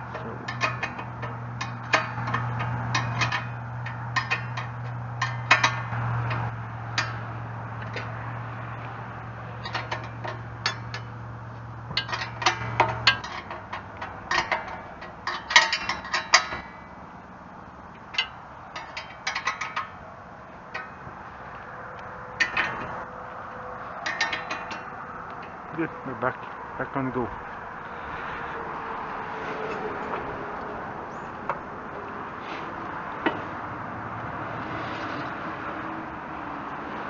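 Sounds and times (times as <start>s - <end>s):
ratchet wrench clicking: 0.5s - 7.2s.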